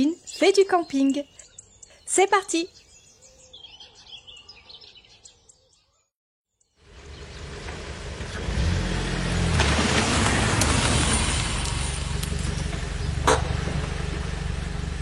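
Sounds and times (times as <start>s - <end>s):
faint birdsong: 0.0s - 8.0s
car engine approaching: 6.8s - 15.0s.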